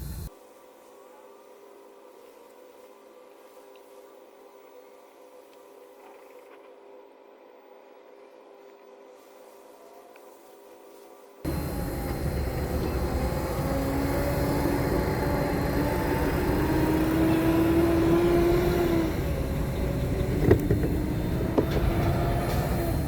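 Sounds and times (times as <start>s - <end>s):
vehicle engine running: 11.5s - 23.0s.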